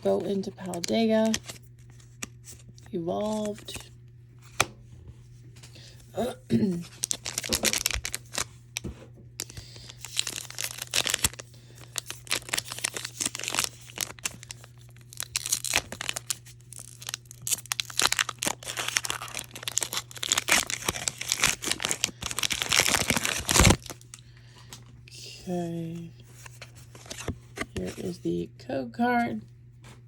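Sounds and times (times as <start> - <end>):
foil wrapper tearing and crinkling: 0.0 - 1.6, 6.9 - 8.6, 9.4 - 24.0.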